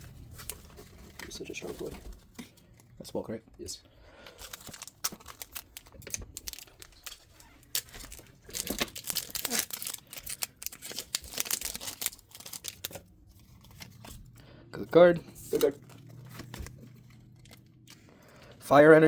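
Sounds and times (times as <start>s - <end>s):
foil wrapper crinkling and tearing: 4.3s - 14.3s.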